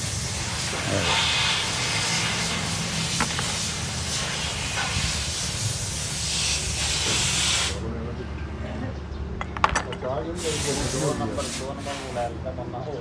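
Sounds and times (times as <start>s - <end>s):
hissing spray: 0.0s - 7.8s, 10.4s - 12.3s.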